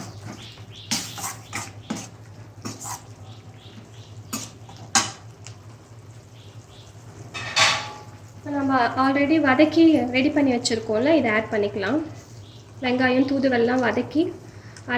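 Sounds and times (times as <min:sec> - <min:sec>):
metal spoon scraping in a pan: 0:00.0 - 0:03.2.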